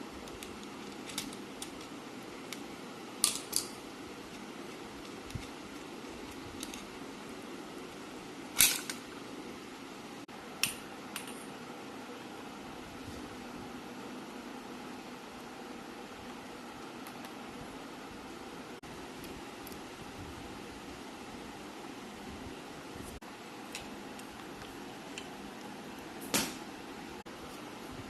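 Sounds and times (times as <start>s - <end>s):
steady low hum: 0.0s - 28.0s
small metal parts clicking: 0.2s - 2.6s, 3.2s - 5.6s.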